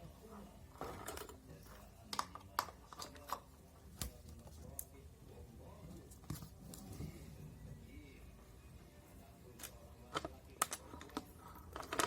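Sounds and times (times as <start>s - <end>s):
tools and plastic parts clicking: 9.6s - 12.0s.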